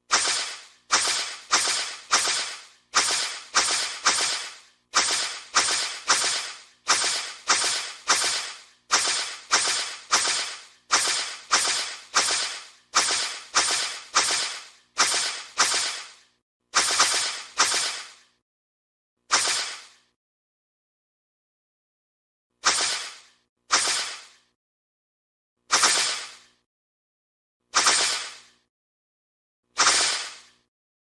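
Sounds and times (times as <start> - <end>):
whip-like whooshes: 0.0 - 18.4, 19.3 - 20.2, 22.6 - 24.6, 25.7 - 26.6, 27.7 - 28.7, 29.8 - 30.7.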